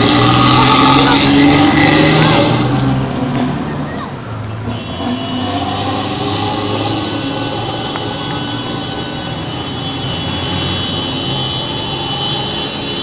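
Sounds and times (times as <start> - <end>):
bus engine and road noise: 0.0 - 13.0.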